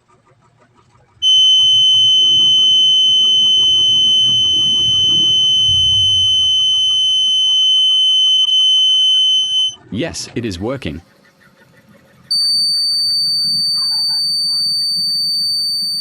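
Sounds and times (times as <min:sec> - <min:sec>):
high-pitched alarm buzzer tone: 0:01.2 - 0:09.8, 0:12.3 - 0:16.0.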